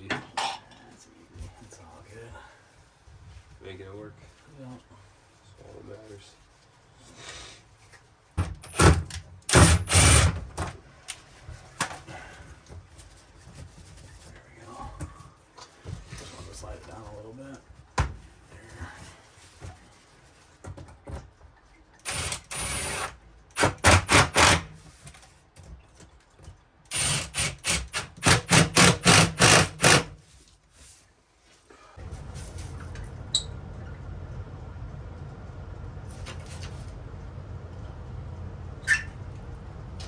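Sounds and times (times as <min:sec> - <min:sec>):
cordless power drill running: 0:09.5 - 0:10.4, 0:22.1 - 0:23.1, 0:23.8 - 0:24.6, 0:26.9 - 0:30.1
steady low hum: 0:31.8 - 0:40.0.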